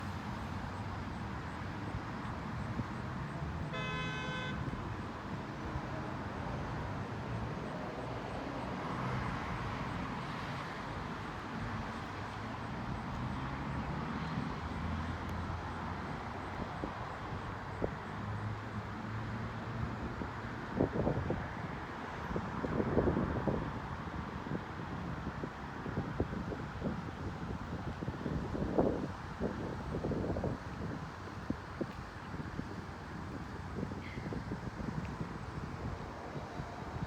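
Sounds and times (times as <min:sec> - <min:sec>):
short horn toot: 0:03.7 - 0:04.6.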